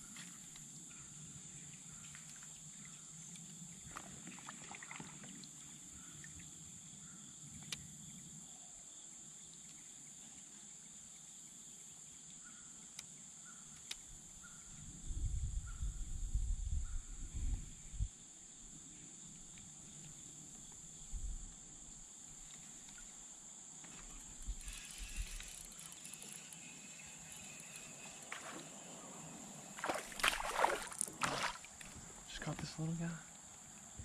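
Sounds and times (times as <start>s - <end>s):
insects trilling: 0.0s - 34.0s
faint clicks: 13.7s - 14.1s.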